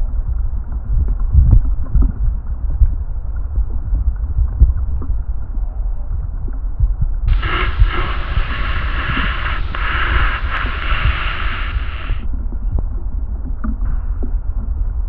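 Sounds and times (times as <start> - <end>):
hiss: 7.3 - 12.2
rain on tree low rumble: 7.3 - 12.2
raindrops ticking: 7.3 - 12.2.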